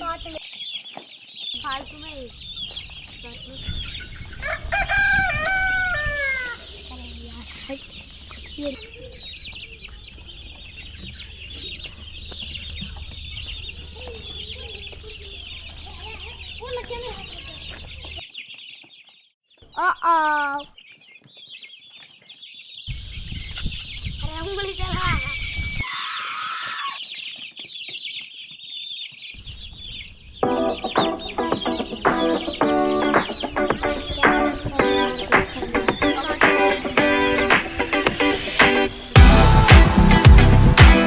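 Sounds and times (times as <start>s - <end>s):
chickens clucking: 0.0s - 18.8s, 19.7s - 41.0s
chicks peeping: 0.0s - 20.0s, 20.6s - 41.0s
background music sustained notes: 30.4s - 41.0s.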